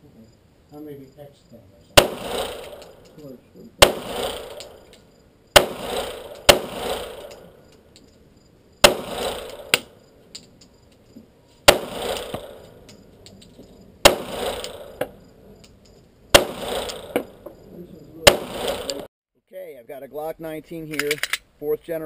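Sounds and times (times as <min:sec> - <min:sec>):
gunshots with short echo: 0:02.0 - 0:04.9, 0:05.5 - 0:07.6, 0:08.8 - 0:10.0, 0:11.7 - 0:12.8, 0:14.0 - 0:15.2, 0:16.3 - 0:17.6, 0:18.2 - 0:19.1.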